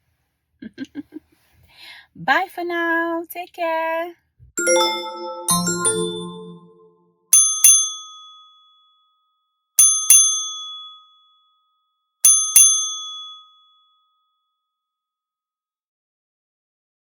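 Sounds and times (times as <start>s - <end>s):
small bell ringing: 4.6s - 8.4s, 9.8s - 11.1s, 12.2s - 13.7s.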